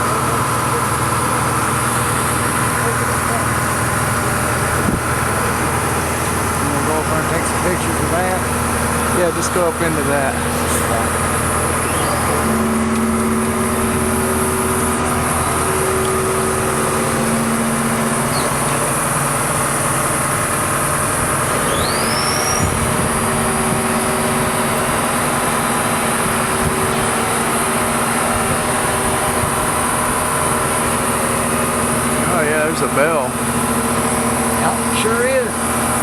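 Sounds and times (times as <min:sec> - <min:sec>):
work lift engine running: 0:00.0 - 0:36.0
short rising squeak: 0:10.5 - 0:15.1, 0:18.1 - 0:18.9, 0:21.6 - 0:22.8.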